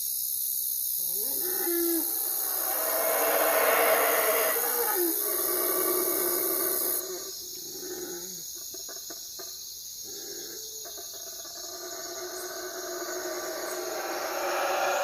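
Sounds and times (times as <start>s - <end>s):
insects trilling: 0.0s - 15.0s
loud high hiss: 1.7s - 6.0s, 12.8s - 15.0s.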